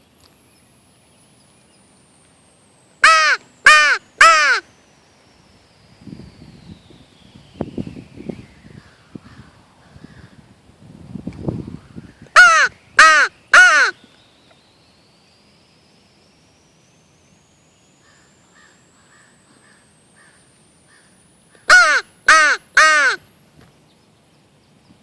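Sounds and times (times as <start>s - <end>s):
crow call harsh caws: 3.0s - 4.6s, 12.4s - 14.0s, 18.0s - 23.2s
distant short calls: 3.0s - 4.8s, 12.3s - 14.1s, 18.0s - 23.4s.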